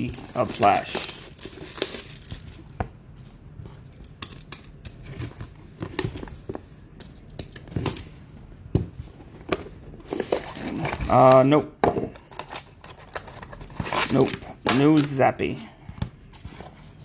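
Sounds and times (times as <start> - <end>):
packaging tearing and crinkling: 0.0 - 2.7.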